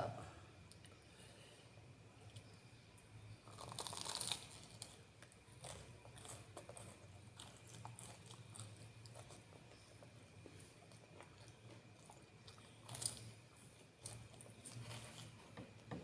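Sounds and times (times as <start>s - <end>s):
crunchy chewing: 3.4s - 15.5s.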